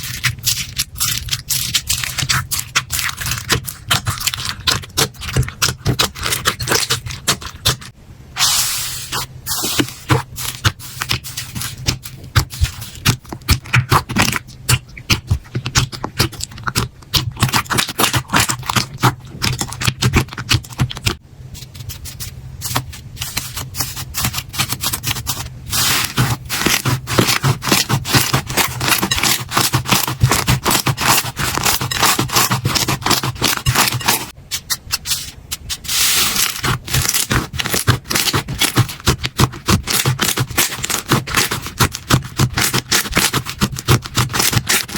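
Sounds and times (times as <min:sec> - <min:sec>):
slime crackling and popping: 0:00.0 - 0:07.8, 0:36.3 - 0:44.9.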